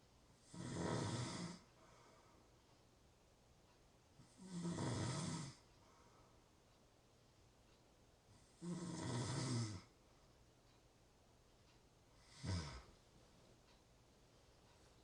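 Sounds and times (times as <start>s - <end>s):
person snoring: 0.4s - 1.7s, 4.3s - 5.6s, 8.5s - 9.9s, 12.2s - 12.9s
faint breathing: 1.3s - 2.7s, 5.4s - 6.6s.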